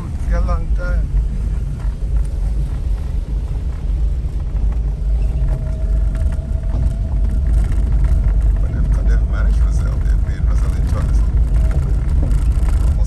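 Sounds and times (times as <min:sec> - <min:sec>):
engine and tyre rumble in car: 0:00.0 - 0:13.0.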